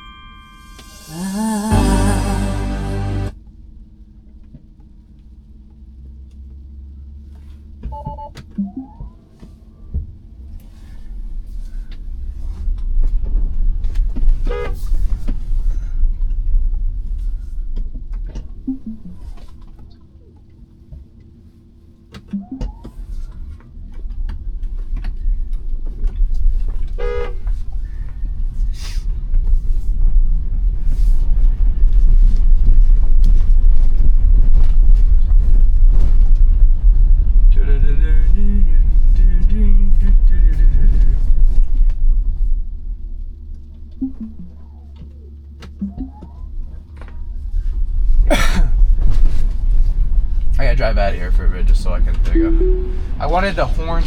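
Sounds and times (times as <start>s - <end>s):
car horn toots: 0.0s - 3.3s, 27.0s - 27.4s
loud low rumble: 0.8s - 3.4s.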